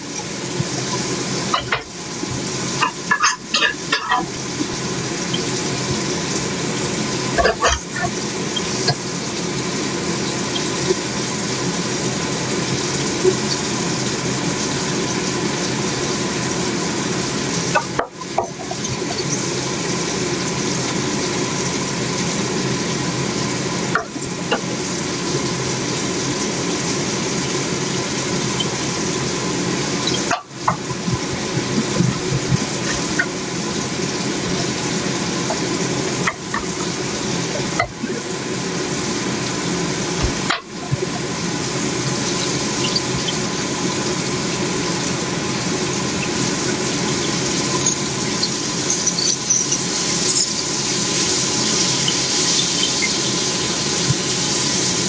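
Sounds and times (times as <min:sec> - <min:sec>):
food sizzling in a frying pan: 0:00.0 - 0:55.0.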